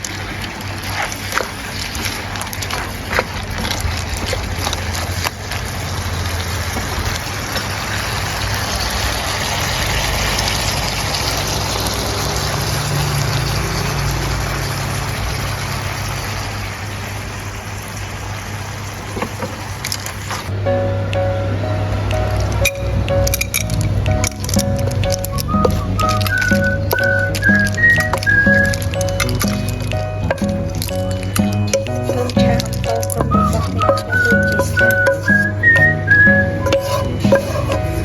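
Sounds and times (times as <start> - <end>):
clams sizzling in a wok: 4.8 - 20.2, 23.4 - 38.0
utensil clicking against pan: 22.5 - 38.0.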